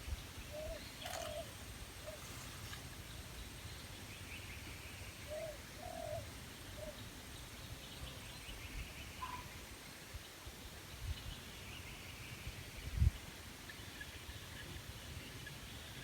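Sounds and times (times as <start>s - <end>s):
dove cooing: 0.6s - 2.2s.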